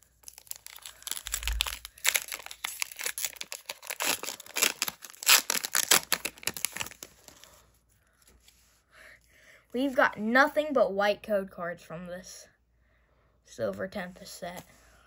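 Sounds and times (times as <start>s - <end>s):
foil wrapper tearing and crinkling: 0.0s - 7.4s.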